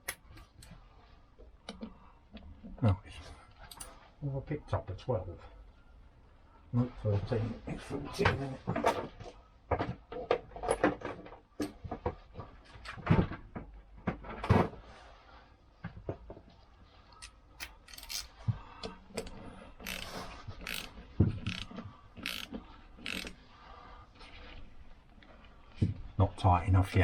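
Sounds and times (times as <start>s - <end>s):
metal tool clinks and knocks: 17.6s - 18.3s
socket ratchet clicking: 17.6s - 18.3s, 19.2s - 23.4s.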